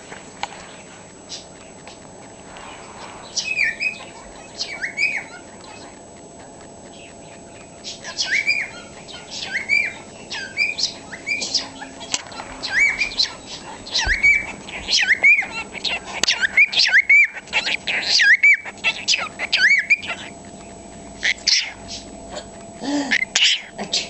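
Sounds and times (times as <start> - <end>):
cockatiel chirping: 3.2 - 6.0, 6.8 - 22.1, 23.2 - 23.8.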